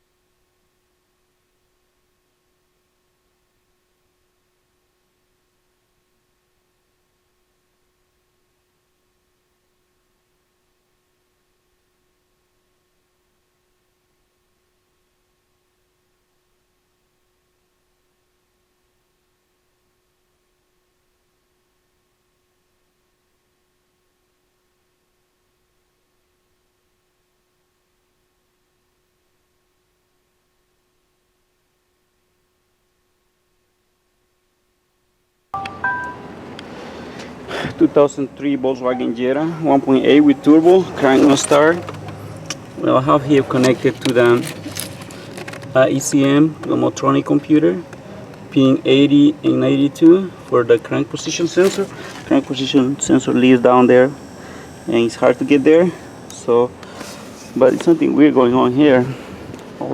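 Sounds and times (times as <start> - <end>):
faint steady hiss: 0.0 - 59.9
faint steady hum: 0.0 - 59.9
low hum-like tone: 37.8 - 56.8.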